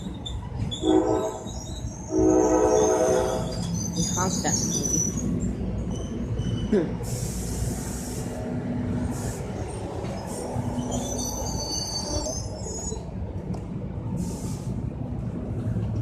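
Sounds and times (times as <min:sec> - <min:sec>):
steel wheels squealing: 0:00.0 - 0:07.2, 0:09.6 - 0:13.1
train rumble and hum: 0:00.0 - 0:16.0
short hissing bursts: 0:07.0 - 0:08.4.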